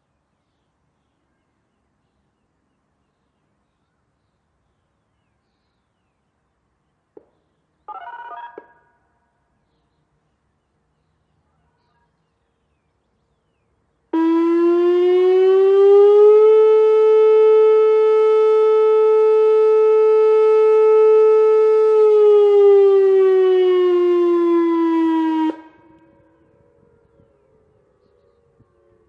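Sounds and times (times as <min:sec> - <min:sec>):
outdoor warning siren: 0:07.9 - 0:09.2, 0:14.1 - 0:29.0.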